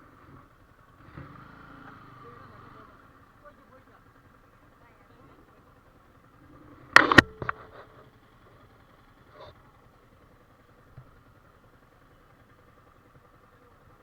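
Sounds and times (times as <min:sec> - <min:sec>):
motorcycle engine idling: 0:00.0 - 0:14.0
sharp clicks and knocks: 0:06.9 - 0:07.9.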